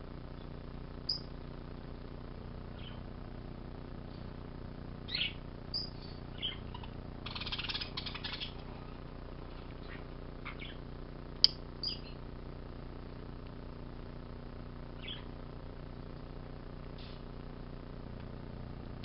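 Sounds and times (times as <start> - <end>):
low hum: 0.0 - 19.0
bird chirping: 0.3 - 1.4, 2.7 - 3.1, 5.0 - 10.9, 11.8 - 12.2, 15.0 - 15.4
sharp click: 11.4 - 11.6.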